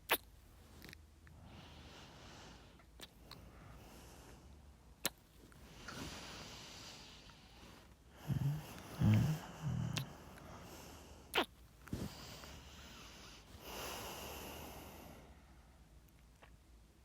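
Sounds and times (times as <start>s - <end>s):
voiced breath: 5.7s - 11.3s, 11.9s - 15.8s.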